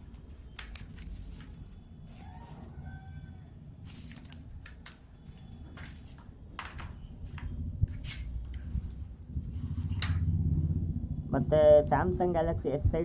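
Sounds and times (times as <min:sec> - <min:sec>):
packaging rustling and crackling: 0:00.0 - 0:02.7, 0:03.9 - 0:09.0.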